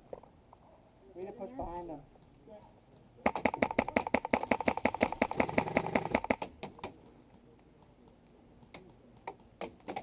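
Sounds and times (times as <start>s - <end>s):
airsoft gun rapid shots: 3.2s - 6.5s.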